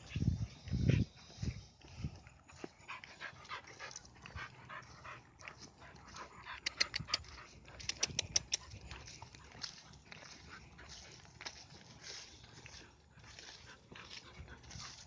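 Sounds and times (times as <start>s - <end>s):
dog panting: 0.0s - 15.0s
sharp clicks: 7.9s - 8.7s.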